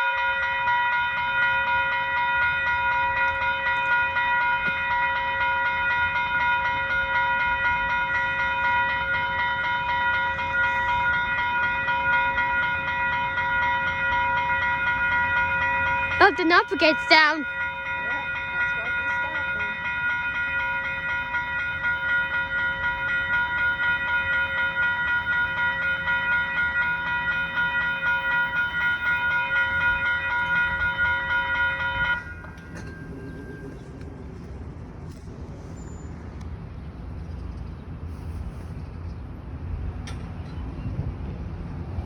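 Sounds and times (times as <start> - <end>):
railroad crossing bell ringing: 0.0 - 34.5
low rail rumble: 0.0 - 42.0.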